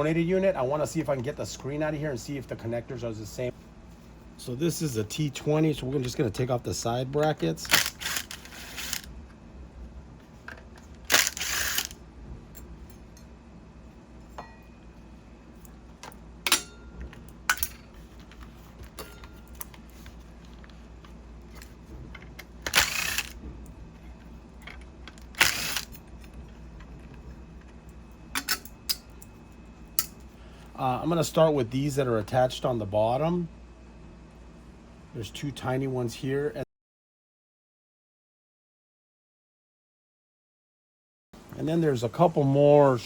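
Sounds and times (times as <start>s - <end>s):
screwdriver rasping clatters: 7.6s - 9.1s, 10.5s - 12.0s, 22.2s - 23.4s, 24.7s - 26.4s
sharp tool clicks: 11.1s - 12.0s, 22.7s - 23.4s, 25.4s - 26.0s.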